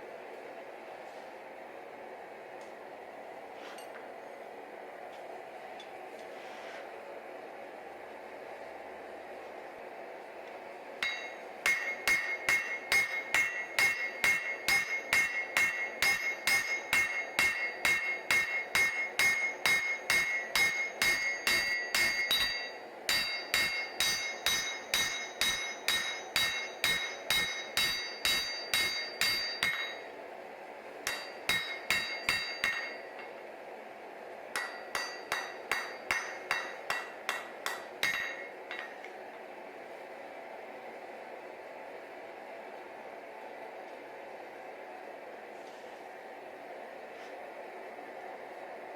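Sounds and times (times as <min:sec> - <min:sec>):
hammer striking steel on anvil: 0:11.0 - 0:30.1, 0:31.0 - 0:33.4, 0:34.5 - 0:39.2.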